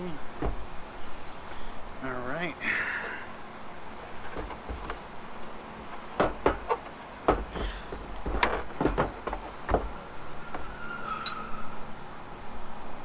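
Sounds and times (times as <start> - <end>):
parts and tools knocking: 0.3 - 1.6, 4.0 - 10.8.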